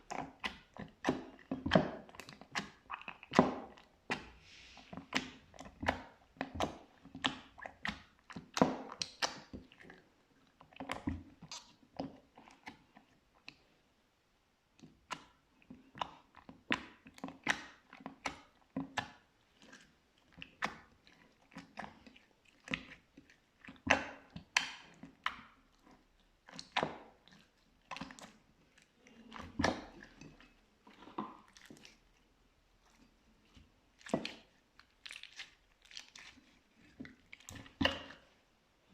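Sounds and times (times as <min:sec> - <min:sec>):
slime wet clicks and pops: 0:23.9 - 0:25.5.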